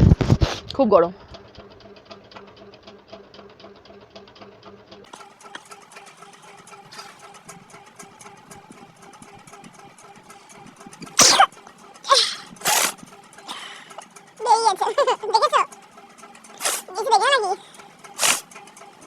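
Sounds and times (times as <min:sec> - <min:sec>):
fast regular ticking: 0:01.1 - 0:19.0
woman sneezing: 0:11.2 - 0:11.5, 0:12.1 - 0:13.0.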